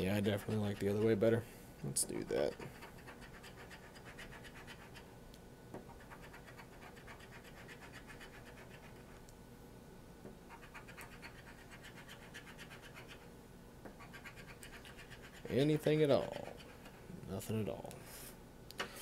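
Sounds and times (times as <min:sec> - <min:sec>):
scratching lottery ticket: 0:00.0 - 0:01.2, 0:02.3 - 0:05.0, 0:10.6 - 0:13.2, 0:14.0 - 0:16.9.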